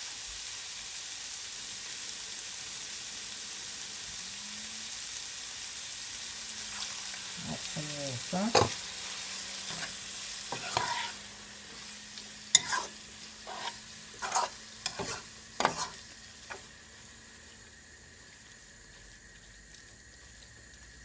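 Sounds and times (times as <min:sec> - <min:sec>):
sizzle from pot: 0:00.0 - 0:21.0
spoon stirring and scraping pot: 0:06.7 - 0:11.9, 0:12.5 - 0:16.7.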